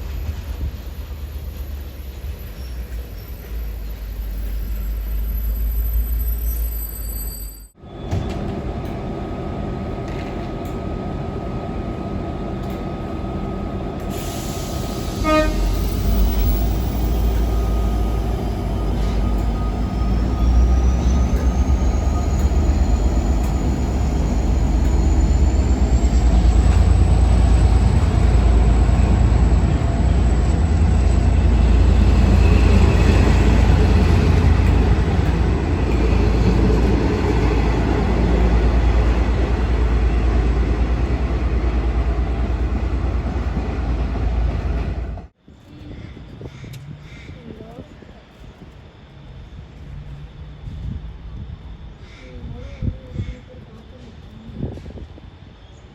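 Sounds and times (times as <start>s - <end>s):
train rumbling past: 0.0s - 55.9s
train horn toot: 15.0s - 16.3s.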